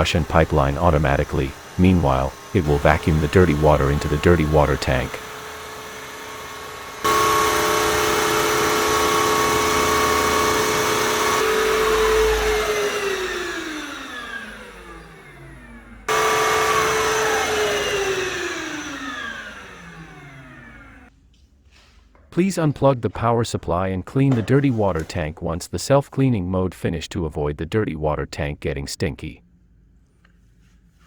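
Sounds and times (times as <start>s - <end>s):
vacuum motor whining: 0.0s - 21.1s.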